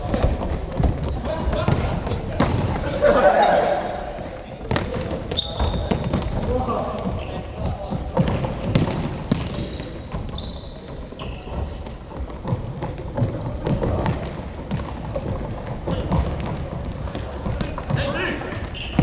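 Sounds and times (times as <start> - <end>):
ball thudding on indoor court: 0.0 - 19.0
shoes squeaking on floor: 0.0 - 19.0.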